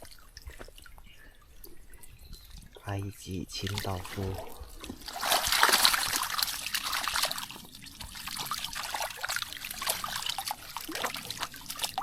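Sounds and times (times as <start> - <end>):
water trickling: 0.0 - 12.0.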